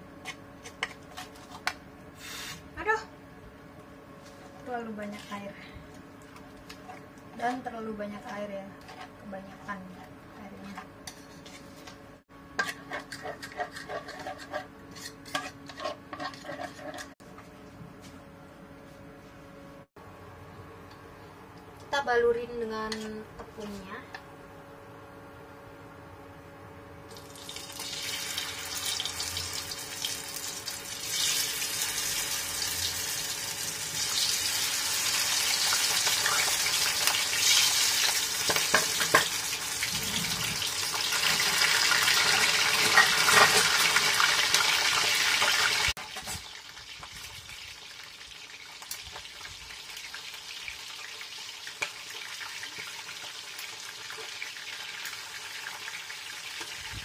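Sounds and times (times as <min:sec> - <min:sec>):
food sizzling in hot oil: 0:02.2 - 0:02.8, 0:27.1 - 0:57.0.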